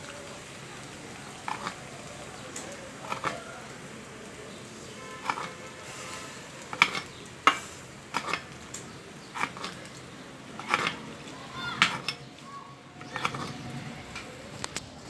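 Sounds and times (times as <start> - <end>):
steady hiss: 0.0 - 10.6
metal dish clinks and knocks: 5.2 - 5.6.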